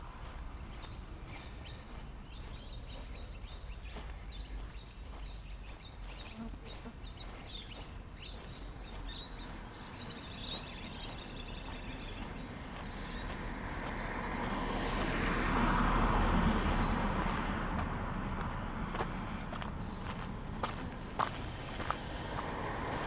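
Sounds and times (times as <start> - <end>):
small birds chirping: 0.0 - 23.0
low outdoor rumble: 16.3 - 23.0.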